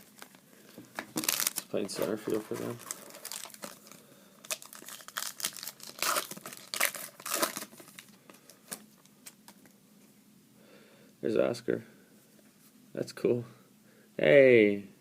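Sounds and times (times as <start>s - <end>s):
foil wrapper tearing and crinkling: 1.2s - 8.1s.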